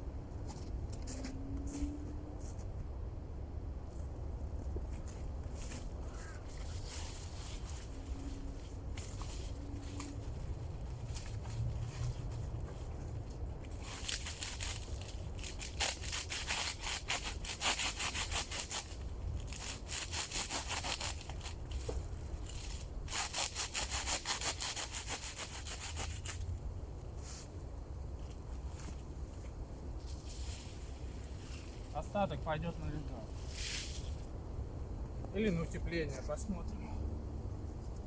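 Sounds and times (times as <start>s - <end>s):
sawing dry reed stems: 4.9s - 26.5s.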